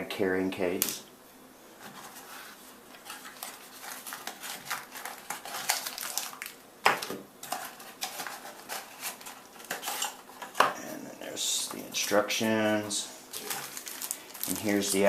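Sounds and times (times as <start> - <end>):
packaging clicks and clinks: 3.1 - 6.6, 13.4 - 15.0.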